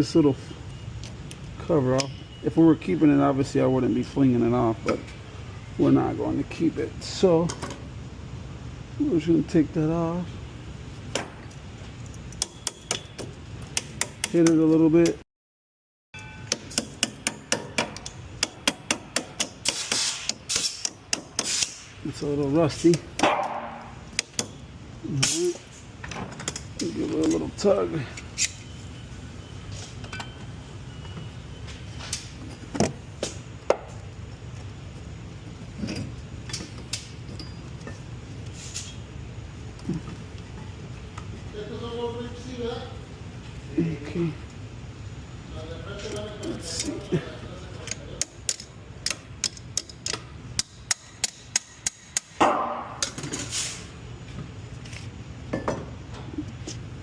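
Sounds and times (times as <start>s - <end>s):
hammer striking metal: 12.4s - 14.7s, 16.2s - 21.9s, 22.9s - 24.6s
metal clinks and knocks: 35.8s - 38.1s
metallic clicks and knocks: 47.8s - 52.4s.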